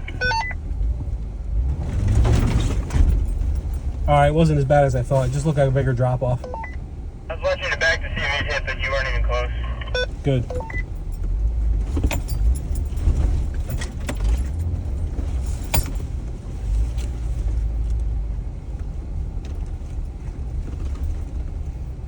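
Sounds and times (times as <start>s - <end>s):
low engine and drivetrain rumble: 0.0s - 22.0s.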